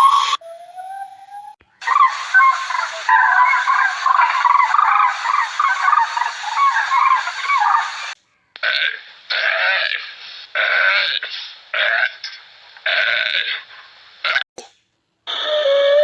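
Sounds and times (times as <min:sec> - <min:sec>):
fowl calling: 0:01.8 - 0:08.7.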